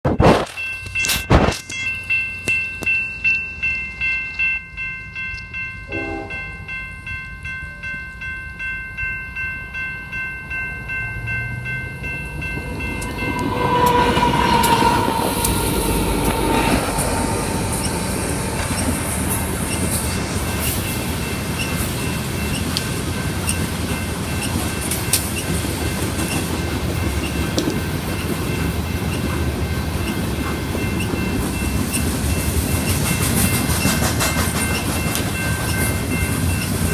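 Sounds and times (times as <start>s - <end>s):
locomotive air horn: 5.9s - 6.4s
freight cars rumbling and clacking: 11.1s - 36.9s
locomotives passing rush: 11.4s - 36.9s.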